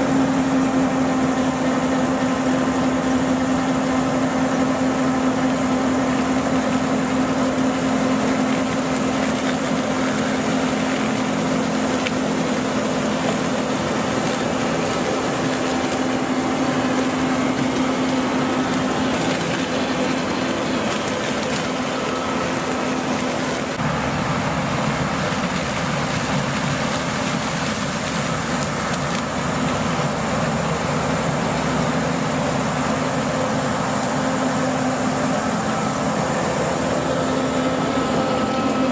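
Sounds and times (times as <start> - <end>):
combine harvester engine hum: 0.0 - 38.9.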